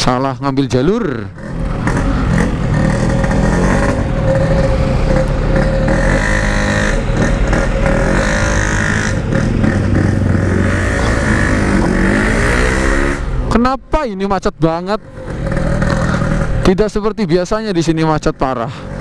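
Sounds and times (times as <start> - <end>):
two-stroke motorcycle engine running: 1.3 - 13.7, 15.0 - 17.1.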